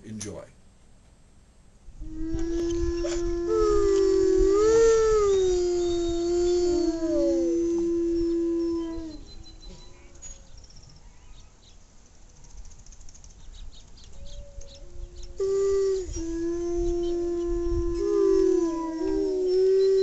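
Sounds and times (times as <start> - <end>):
canids howling: 2.0 - 10.2, 14.2 - 20.0.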